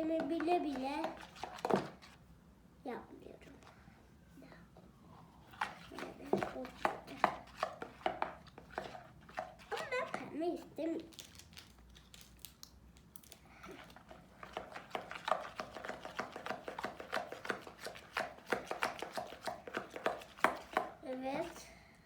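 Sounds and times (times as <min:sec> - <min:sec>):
slime being stirred clicking: 0:00.0 - 0:02.2, 0:05.5 - 0:10.3, 0:11.0 - 0:21.6.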